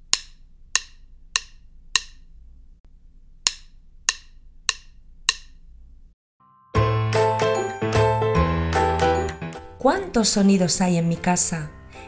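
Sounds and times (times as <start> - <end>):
chopsticks clacking together: 0.0 - 2.2, 3.5 - 5.6.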